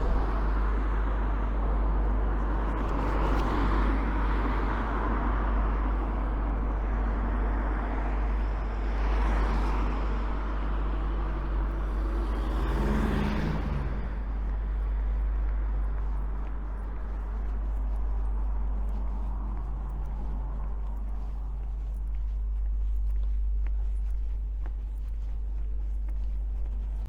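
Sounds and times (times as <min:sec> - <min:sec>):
cars passing: 0:00.0 - 0:27.0
loud vehicle engine passing: 0:10.7 - 0:15.0.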